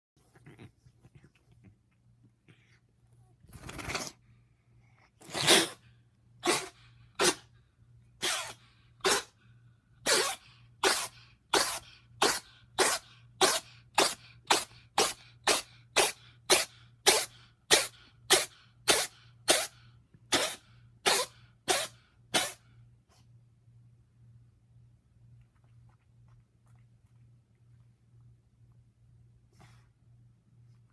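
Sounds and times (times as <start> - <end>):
cat sneezing: 3.6 - 4.2, 5.2 - 7.6, 8.2 - 9.4, 10.0 - 23.2.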